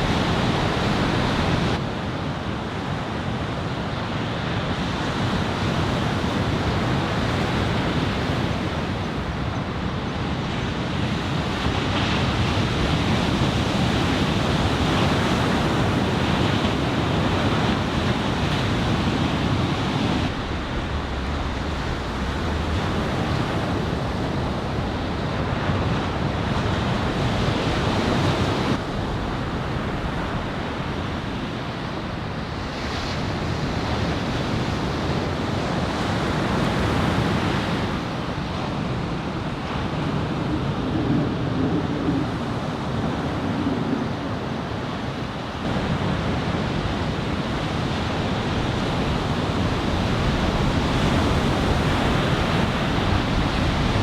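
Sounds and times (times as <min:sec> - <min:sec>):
ocean surf breaking: 0:00.0 - 0:54.0
wind rumbling on microphone: 0:00.0 - 0:54.0.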